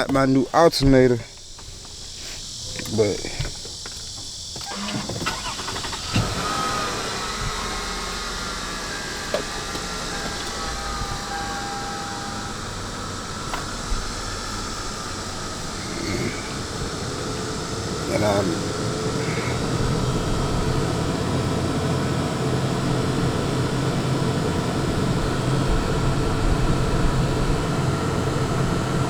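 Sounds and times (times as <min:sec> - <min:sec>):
air conditioning blowing: 0:00.0 - 0:29.0
car engine cranking and starting: 0:00.0 - 0:29.0
car engine idling: 0:00.0 - 0:29.0.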